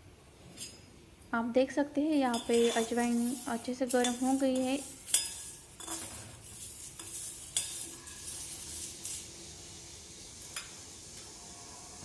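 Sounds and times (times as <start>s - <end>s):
faint sizzle: 0.0s - 12.0s
spoon stirring seeds in pan: 2.3s - 11.2s.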